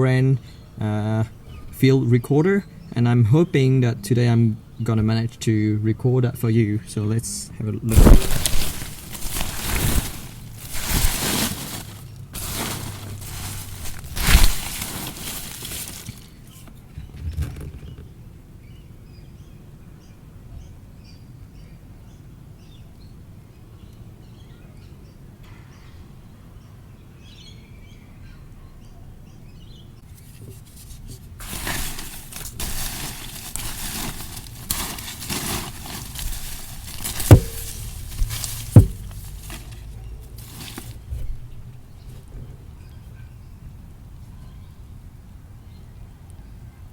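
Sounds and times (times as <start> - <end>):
rustling handling noise: 7.8 - 18.1, 30.0 - 42.3
sharp knocks: 36.8 - 39.2.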